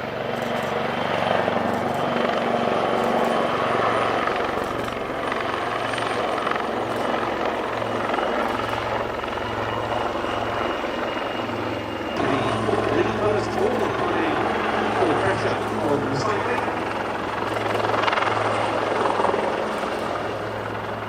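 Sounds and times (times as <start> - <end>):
helicopter rotor noise: 0.0 - 21.0
turboshaft engine whine: 0.0 - 21.0.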